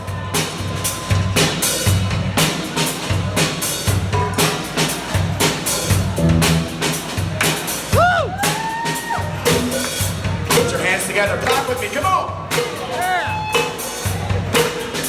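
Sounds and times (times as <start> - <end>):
drum kit beating: 0.4 - 15.0
repeating bass line: 6.2 - 7.4, 9.5 - 10.1.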